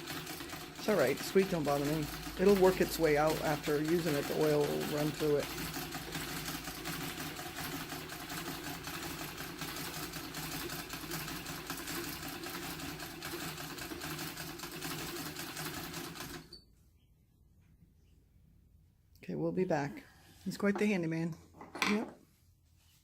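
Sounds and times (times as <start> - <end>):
sewing machine clattering: 0.0 - 16.6
sewing machine squeak: 16.0 - 16.7.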